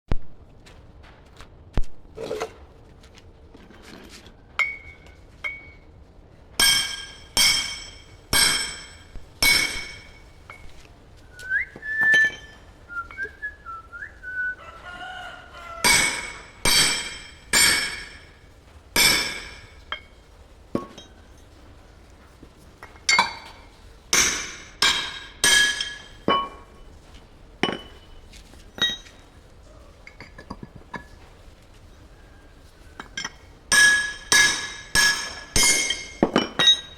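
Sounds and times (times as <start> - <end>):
hammer striking steel: 4.6 - 5.8, 6.6 - 10.8, 11.8 - 13.2, 15.8 - 18.4, 19.0 - 20.2, 23.0 - 26.7, 27.6 - 28.1, 33.0 - 36.9.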